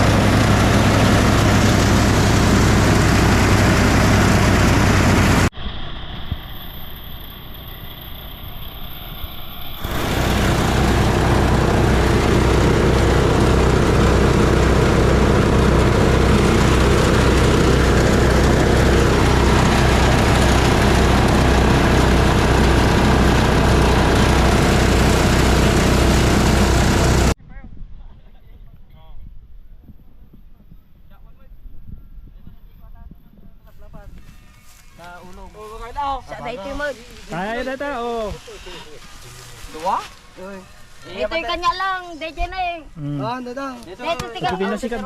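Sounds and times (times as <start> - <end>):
small engine running: 0.0 - 27.4.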